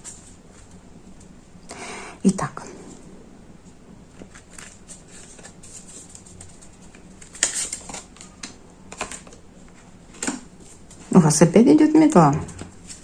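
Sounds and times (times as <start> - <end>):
cards shuffling and rustling: 4.2 - 11.1, 12.6 - 13.0.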